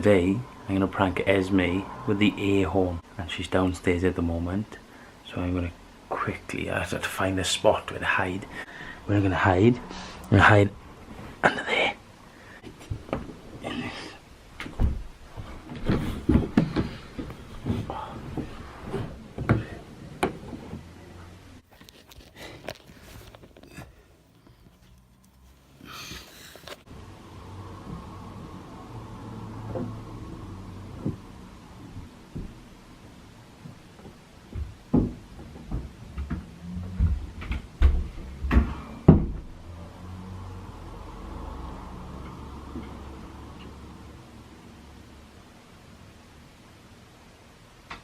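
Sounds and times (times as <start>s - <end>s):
irregular knocks and thumps: 14.6s - 20.8s, 30.9s - 32.6s, 34.0s - 39.5s
rustling: 21.6s - 26.9s
bumps and knocks: 34.0s - 39.5s.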